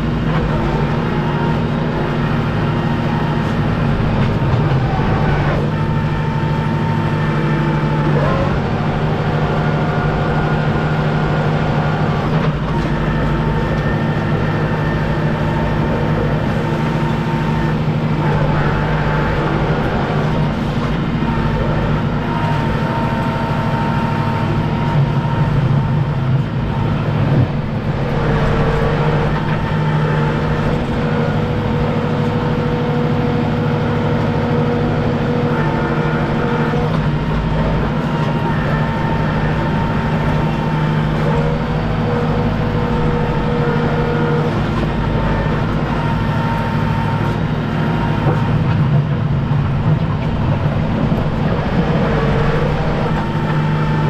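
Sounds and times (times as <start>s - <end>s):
tractor diesel engine running: 0.0s - 54.0s.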